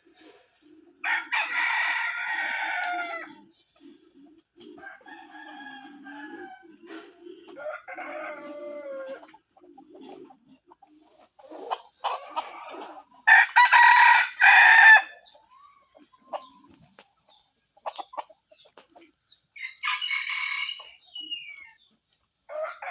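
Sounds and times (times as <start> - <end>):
rooster crowing: 1.0 - 3.3, 4.8 - 6.7, 7.6 - 9.2, 13.3 - 15.2, 19.7 - 21.0, 22.5 - 22.9.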